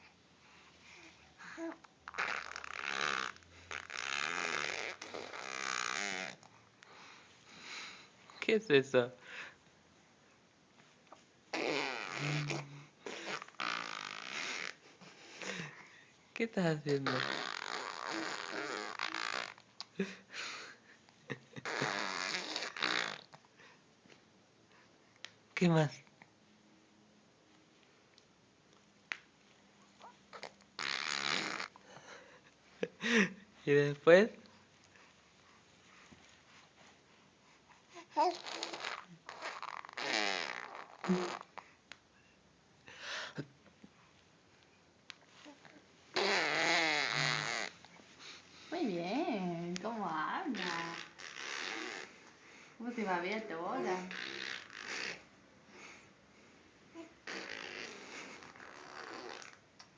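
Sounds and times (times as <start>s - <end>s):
person making raspy mouth noises: 11.6s - 14.8s, 38.4s - 41.6s
person blowing breathily: 11.9s - 13.5s.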